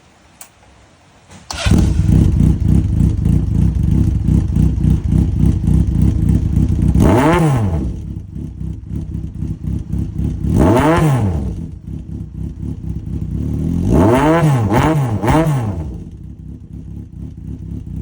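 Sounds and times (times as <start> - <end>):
engine throttle blip: 1.3 - 6.0
motorcycle engine idling: 1.5 - 14.0, 15.1 - 18.0.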